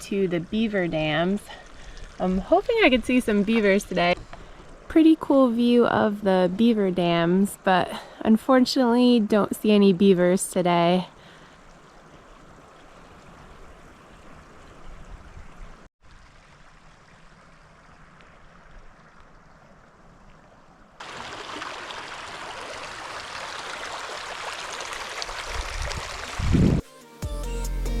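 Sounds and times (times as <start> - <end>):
water rushing: 10.8 - 26.7.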